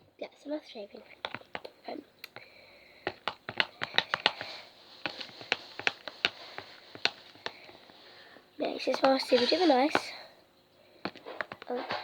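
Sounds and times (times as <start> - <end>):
faint hiss: 4.0 - 11.0.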